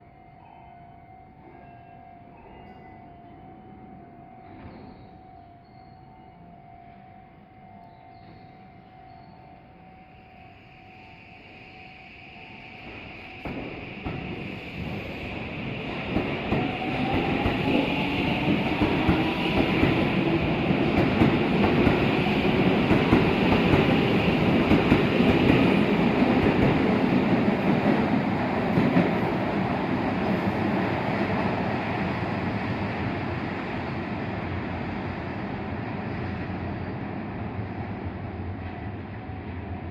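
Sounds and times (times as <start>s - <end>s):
wheels rumbling on rail: 12.8s - 39.9s.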